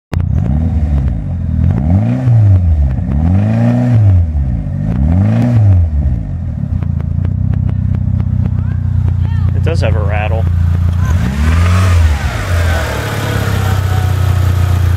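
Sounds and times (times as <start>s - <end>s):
car engine revving: 0.1s - 14.9s
engine knocking: 6.7s - 11.8s.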